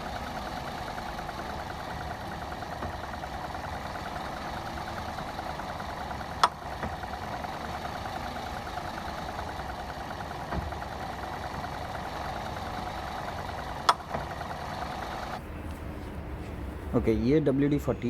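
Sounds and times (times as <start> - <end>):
car engine idling: 0.0 - 18.0.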